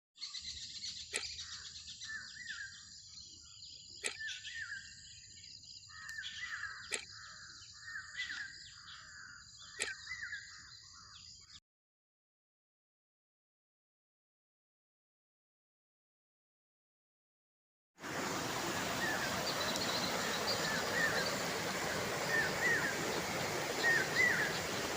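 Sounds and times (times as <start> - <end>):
birds calling: 5.9 - 11.5, 18.0 - 24.9
faint flowing water: 18.0 - 24.9.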